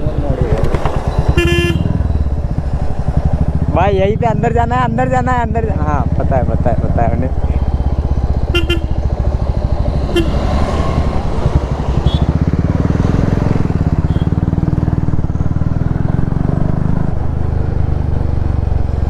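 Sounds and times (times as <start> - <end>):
motorcycle engine accelerating: 0.0 - 19.0
short horn beep: 1.3 - 2.1, 8.5 - 9.0, 10.1 - 10.4.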